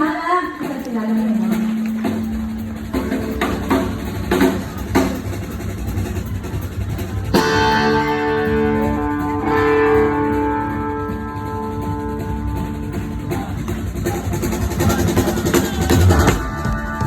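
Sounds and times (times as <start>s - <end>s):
live band playing: 0.0s - 17.0s
guitar chord ringing: 7.4s - 13.2s.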